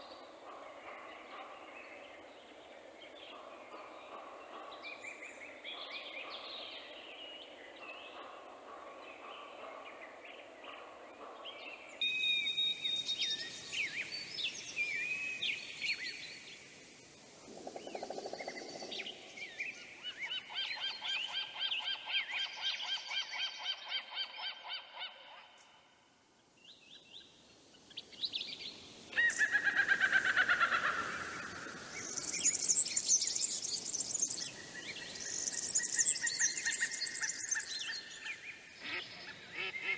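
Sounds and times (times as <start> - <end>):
whistled bird calls: 12.0 - 14.1.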